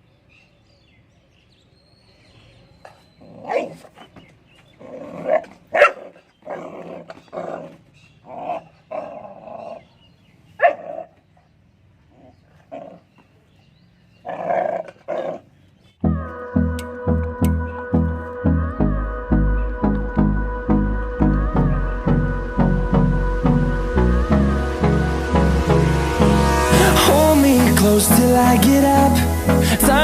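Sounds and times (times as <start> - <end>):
puppy barking and growling: 4.9 - 9.8, 10.6 - 11.1, 14.3 - 15.5.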